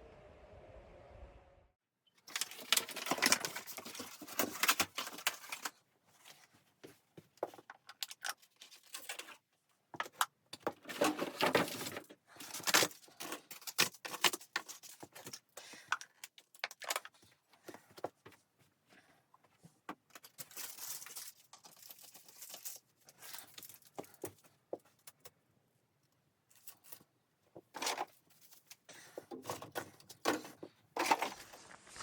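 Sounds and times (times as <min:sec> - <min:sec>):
rustling and crunching: 0:02.2 - 0:18.4, 0:26.5 - 0:32.0.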